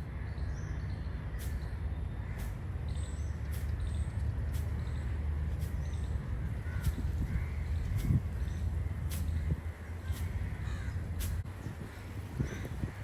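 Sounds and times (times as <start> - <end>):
steady low rumble: 0.0 - 13.0.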